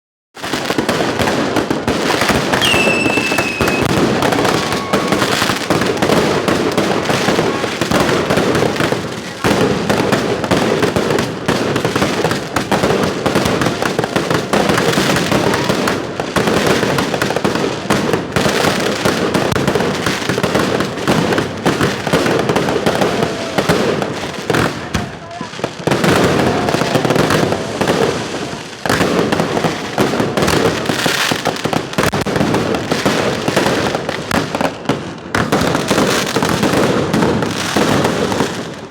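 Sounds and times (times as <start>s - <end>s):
fireworks crackling: 0.4s - 38.9s
firework whistle: 2.3s - 8.4s.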